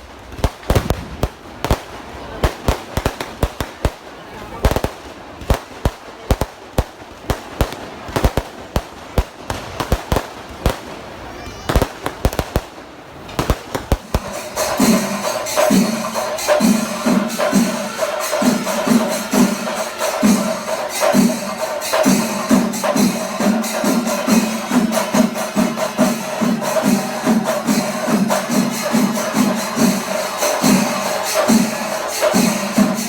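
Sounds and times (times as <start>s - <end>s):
steady drumbeat: 13.4s - 33.0s.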